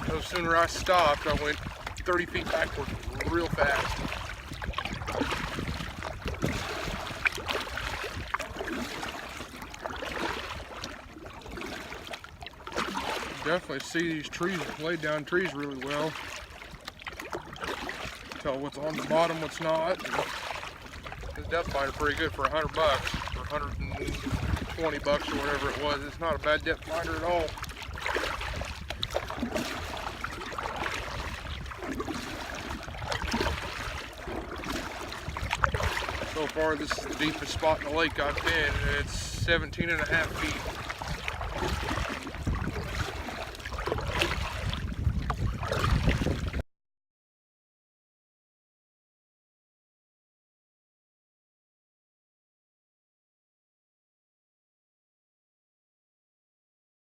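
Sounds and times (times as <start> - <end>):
wind on microphone: 0.0 - 13.3, 20.7 - 46.6
water lapping against boat hull: 0.0 - 46.6.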